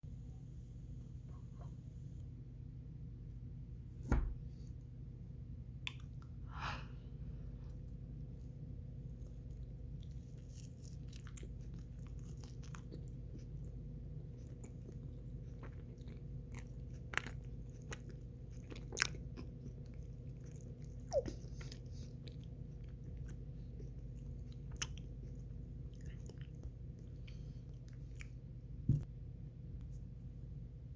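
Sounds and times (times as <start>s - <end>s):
steady low hum: 0.0s - 30.9s
wet mouth clicks and smacks: 5.9s - 6.3s.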